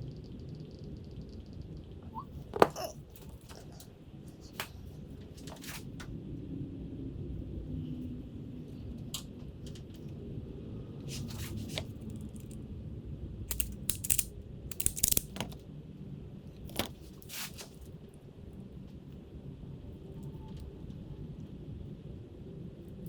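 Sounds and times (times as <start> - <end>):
small tools clicking: 13.5 - 15.6.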